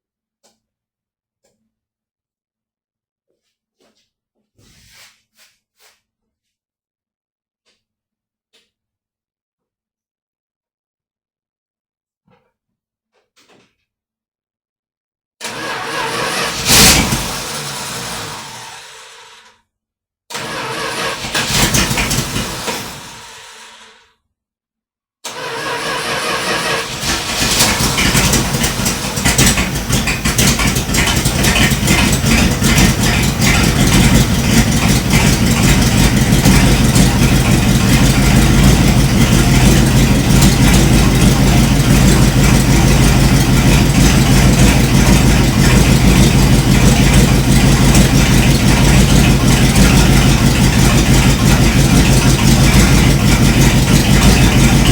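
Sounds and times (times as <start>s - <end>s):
engine starting and idling: 15.4s - 19.5s, 20.3s - 24.0s, 25.3s - 54.9s.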